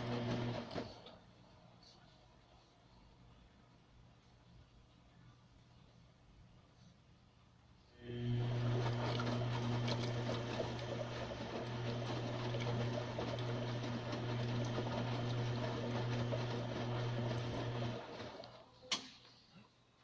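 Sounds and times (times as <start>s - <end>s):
washing machine hum: 0.0s - 1.2s, 8.0s - 18.7s.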